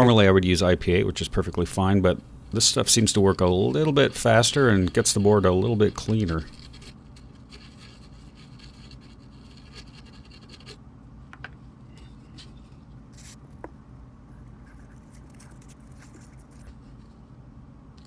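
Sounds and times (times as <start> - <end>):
scrubbing on circuit board: 0.0 - 6.9.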